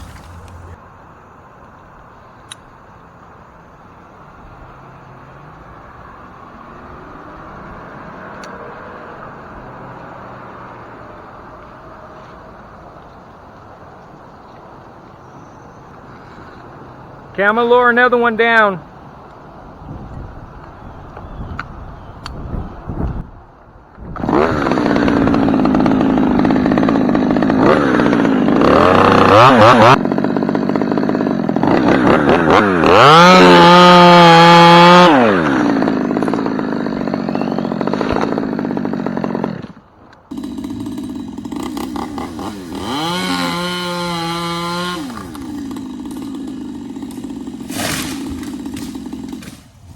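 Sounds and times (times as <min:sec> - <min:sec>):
chainsaw revving and cutting: 0:00.0 - 0:00.8, 0:24.2 - 0:49.9.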